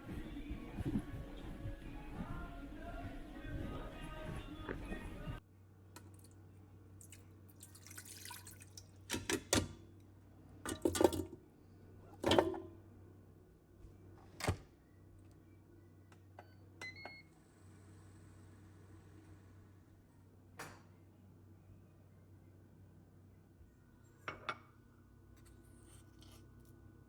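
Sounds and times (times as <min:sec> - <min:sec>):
low room hum: 0:00.0 - 0:27.0
objects knocking and clattering: 0:10.7 - 0:11.4.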